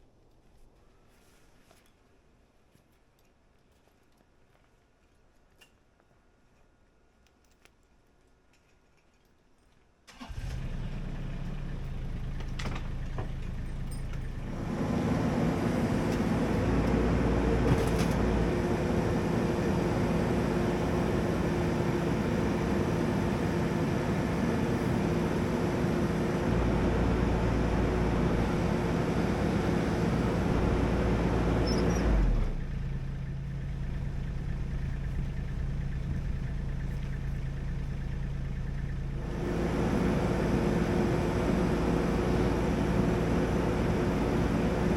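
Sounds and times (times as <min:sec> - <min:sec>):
engine running: 0:10.1 - 0:44.9.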